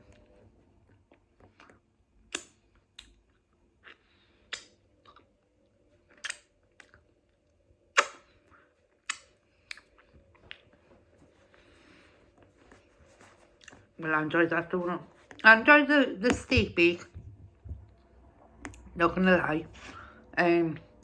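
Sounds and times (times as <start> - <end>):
chewing with wet mouth clicks: 0.8 - 5.4, 6.0 - 8.2, 8.9 - 10.8.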